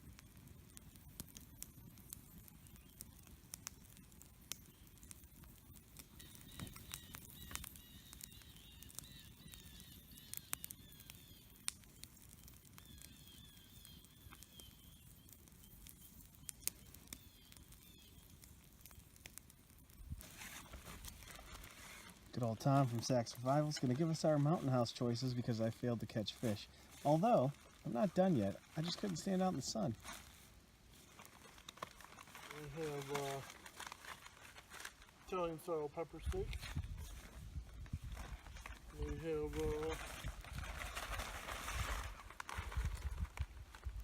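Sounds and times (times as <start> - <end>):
small clicks and crackles: 0.0 - 44.0
bird chirping: 6.1 - 18.3.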